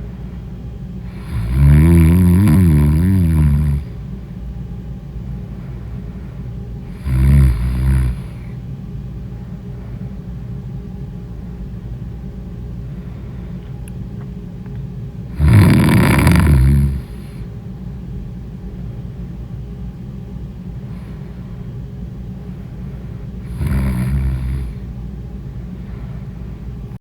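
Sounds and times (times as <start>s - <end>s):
steady low hum: 0.0s - 27.0s
person snoring: 1.0s - 4.0s, 6.9s - 8.6s, 15.3s - 17.5s, 23.4s - 24.8s.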